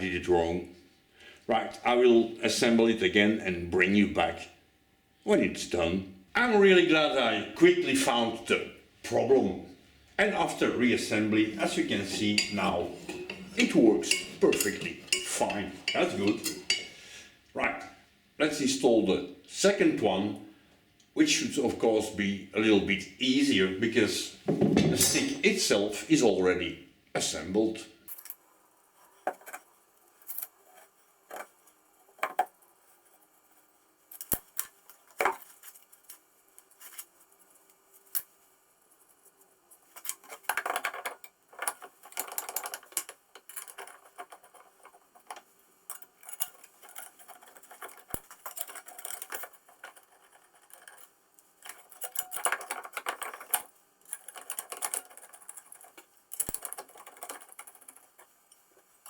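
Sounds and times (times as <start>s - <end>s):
metal parts rattling: 11.3s - 17.0s, 39.9s - 58.4s
small metal parts clicking: 34.1s - 38.3s, 39.8s - 58.4s.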